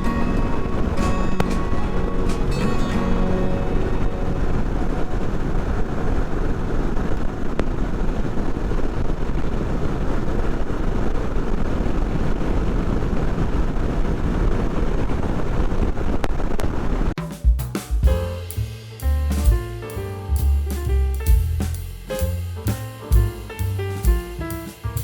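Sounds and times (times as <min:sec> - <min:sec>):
motorcycle road noise: 0:00.0 - 0:17.1
wind rush: 0:00.0 - 0:17.2.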